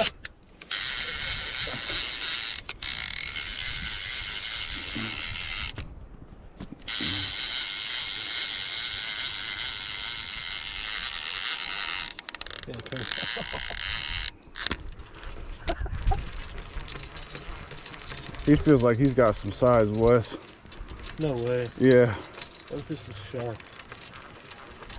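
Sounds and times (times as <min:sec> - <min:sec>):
fishing reel clicker buzzing: 0:00.0 - 0:05.8, 0:06.9 - 0:15.2.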